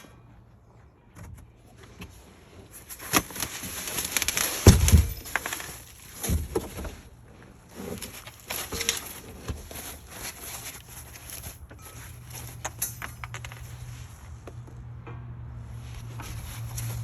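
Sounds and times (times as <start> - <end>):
packaging rustling: 2.9 - 6.7, 7.8 - 13.8
metal pieces clinking: 8.2 - 13.9.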